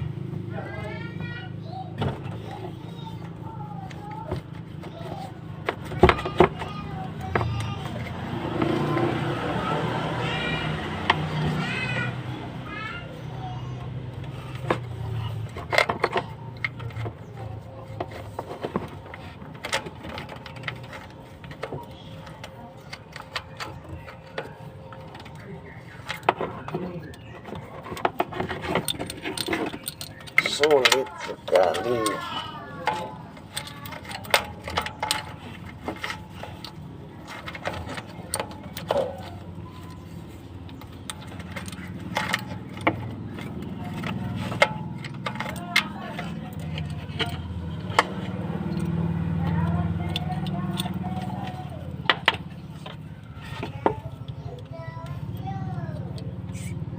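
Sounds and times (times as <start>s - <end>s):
metal hand tools clinking: 27.8s - 53.7s.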